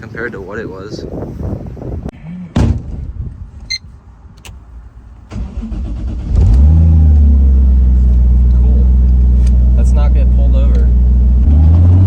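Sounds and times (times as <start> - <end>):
door thudding shut: 2.6 - 3.1
car engine cranking and idling: 4.3 - 12.0.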